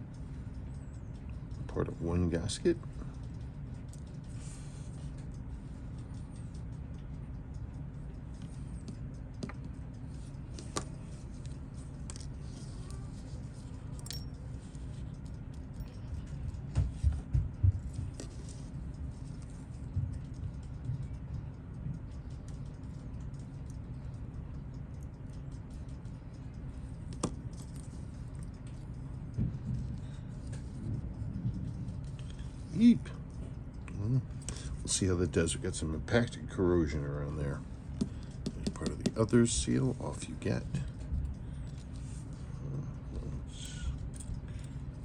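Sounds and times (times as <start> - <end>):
metal tools clicking on watch: 0.0 - 16.7, 17.5 - 45.0
steady low hum: 0.0 - 45.0.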